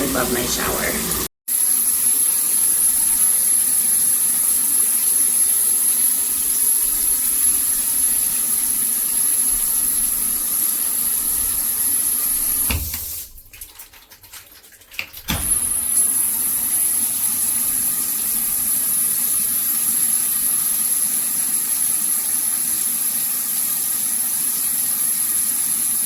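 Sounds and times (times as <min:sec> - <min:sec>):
water spraying from shower head: 0:00.0 - 0:13.4, 0:15.3 - 0:26.0.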